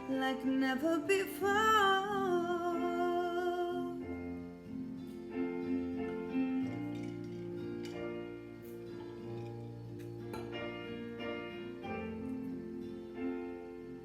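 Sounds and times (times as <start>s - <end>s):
woman singing with vibrato: 0.0s - 4.1s
karaoke backing track chords: 0.0s - 6.7s.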